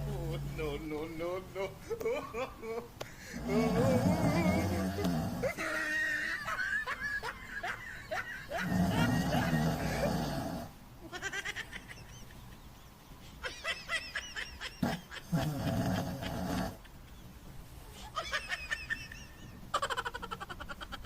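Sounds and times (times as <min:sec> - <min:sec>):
low long breath: 0:03.1 - 0:03.9
dog snoring: 0:03.4 - 0:05.6, 0:08.6 - 0:10.7, 0:14.9 - 0:16.8.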